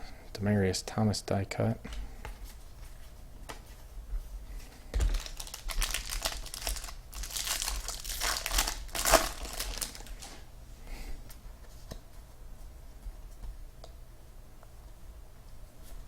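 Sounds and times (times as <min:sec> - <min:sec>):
plastic wrapper tearing and crinkling: 0:05.0 - 0:10.4.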